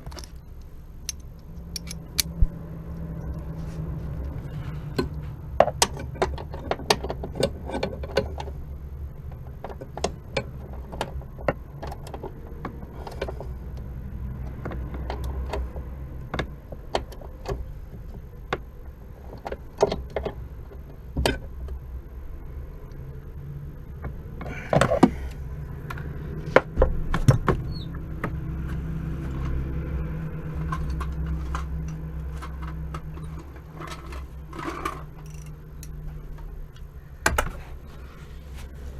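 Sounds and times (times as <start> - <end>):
metallic tool clicks and clinks: 1.1 - 2.3
steady low hum: 15.6 - 38.9.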